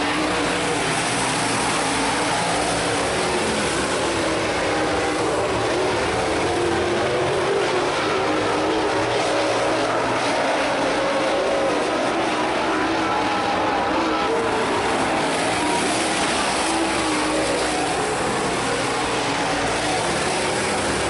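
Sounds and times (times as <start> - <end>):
race car engines droning: 0.0 - 21.0.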